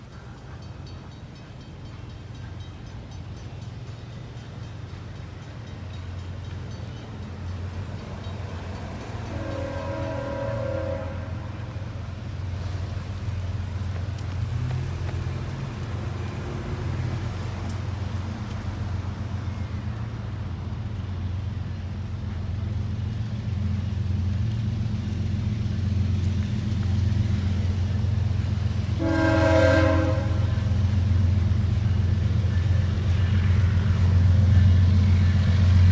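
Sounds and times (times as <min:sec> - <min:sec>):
diesel locomotive engine rumble: 0:00.0 - 0:35.9
locomotive air horn blast: 0:08.9 - 0:12.2, 0:28.9 - 0:30.9.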